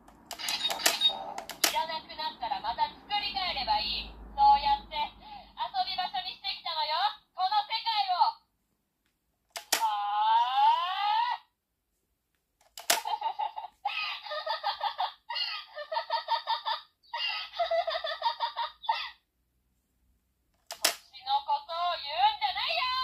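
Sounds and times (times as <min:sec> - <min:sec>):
toy trigger click: 0:00.3 - 0:01.8, 0:09.5 - 0:09.9, 0:12.6 - 0:13.1, 0:20.6 - 0:21.1
toy sound effects: 0:00.3 - 0:02.4
toy voice clip: 0:00.4 - 0:08.4, 0:09.7 - 0:11.4, 0:21.1 - 0:23.0.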